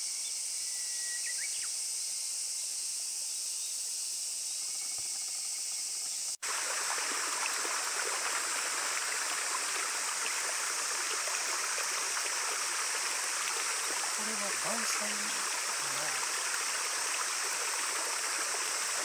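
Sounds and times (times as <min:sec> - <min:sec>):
faint insect hiss: 0:00.0 - 0:19.0
stream water rushing: 0:06.4 - 0:19.0.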